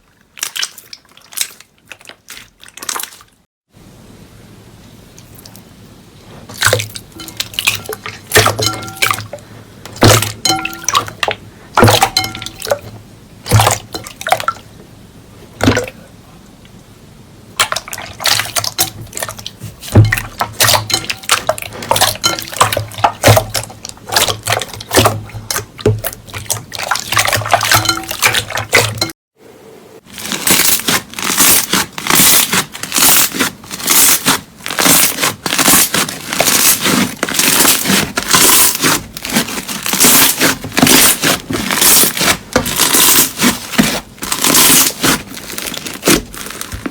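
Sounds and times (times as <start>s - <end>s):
slime popping and crackling: 30.2s - 46.9s.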